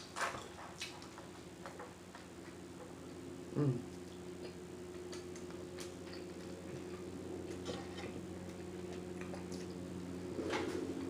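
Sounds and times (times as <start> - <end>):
chewing with mouth-smacking: 0.6 - 1.2, 3.9 - 10.5.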